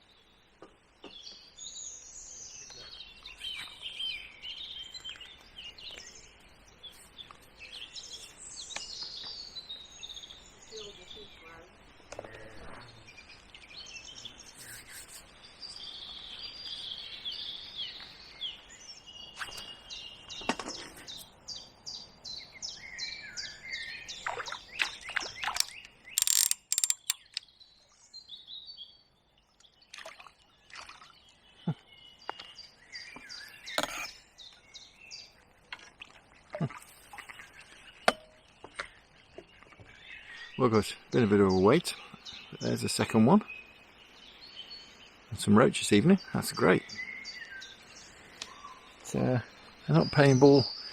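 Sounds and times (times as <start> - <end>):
small birds chirping: 1.0 - 29.9, 31.1 - 35.7, 36.8 - 50.9
sharp knocks and clicks: 25.6 - 27.4.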